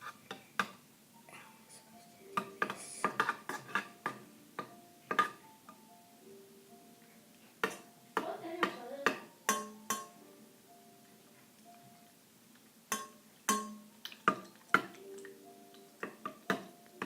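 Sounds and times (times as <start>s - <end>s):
spoon clinking against mixing bowl: 8.6s - 10.2s, 12.9s - 16.7s.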